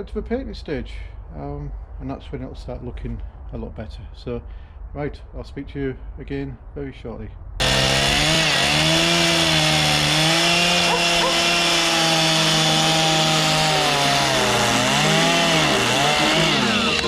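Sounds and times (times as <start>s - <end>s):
chainsaw cutting wood: 7.6s - 17.0s.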